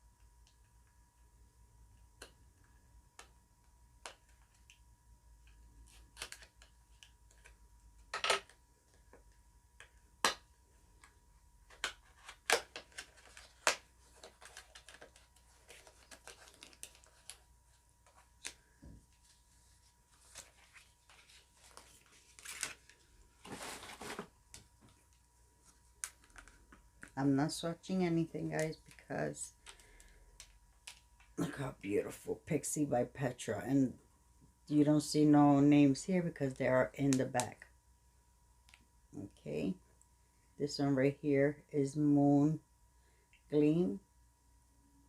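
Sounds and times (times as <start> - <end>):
packaging rustling: 11.7 - 27.1.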